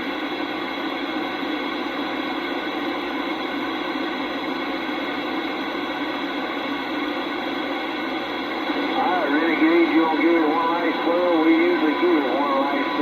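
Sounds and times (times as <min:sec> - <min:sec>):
radio static hiss: 0:08.1 - 0:13.0.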